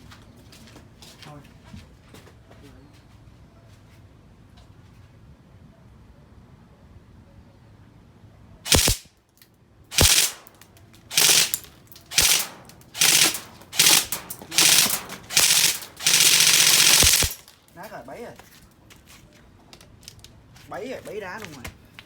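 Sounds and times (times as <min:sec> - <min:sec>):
airsoft rifle firing bursts: 0:08.7 - 0:09.1, 0:09.9 - 0:17.5.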